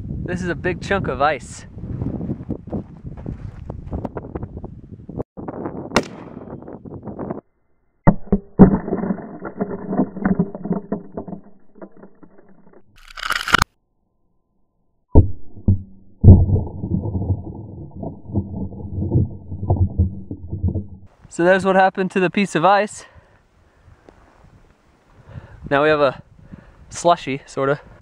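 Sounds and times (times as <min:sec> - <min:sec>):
sharp gunshot burst: 0:06.0 - 0:06.4
slowed-down deep booms: 0:15.1 - 0:21.1.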